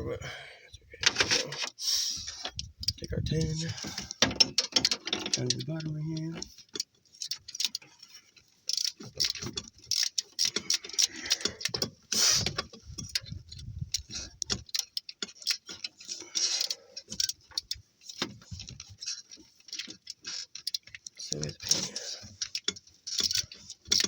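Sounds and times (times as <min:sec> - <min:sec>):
metal tools scraping and knocking: 0:02.4 - 0:05.9.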